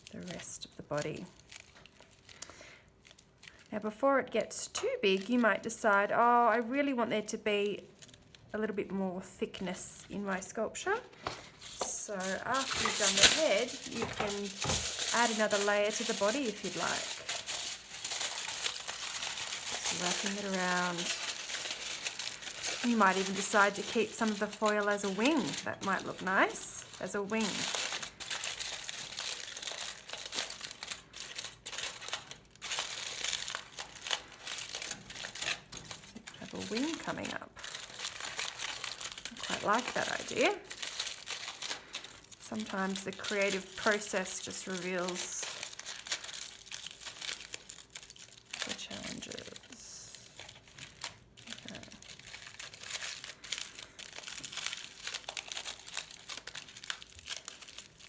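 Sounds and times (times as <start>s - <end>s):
aluminium foil crinkling: 0.0s - 58.0s.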